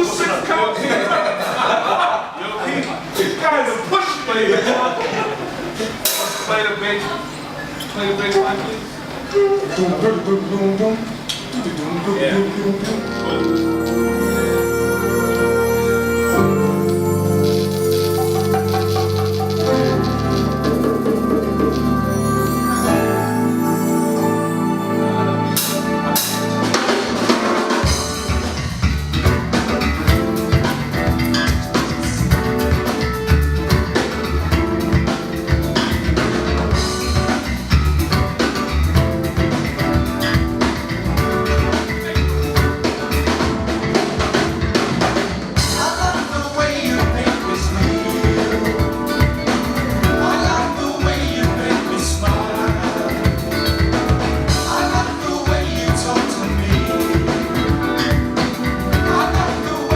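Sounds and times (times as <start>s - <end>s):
jazz-funk band playing: 5.5s - 6.5s, 12.0s - 59.9s
drum kit: 5.9s - 6.6s, 12.8s - 59.9s.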